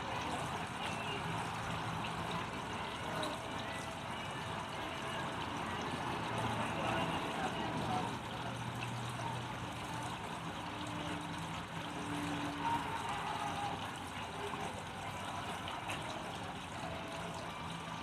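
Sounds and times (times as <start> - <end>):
soft background music: 0.0 - 18.0.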